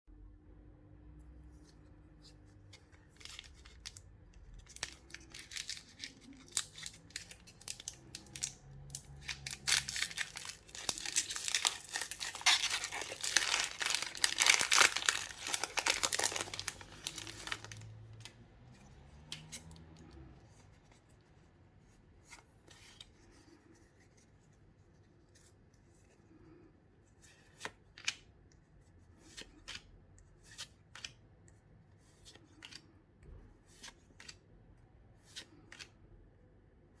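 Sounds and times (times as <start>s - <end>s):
packaging clicks: 4.6s - 17.9s
packaging tearing and crinkling: 4.6s - 18.1s.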